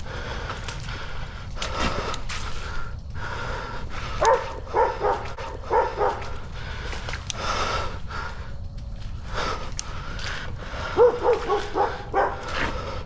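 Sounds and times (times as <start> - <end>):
dog barking: 4.2 - 6.4, 10.9 - 12.6.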